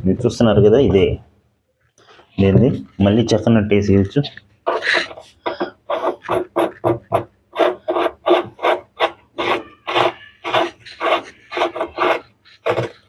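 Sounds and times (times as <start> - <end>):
hand tool rasping: 4.7 - 13.0.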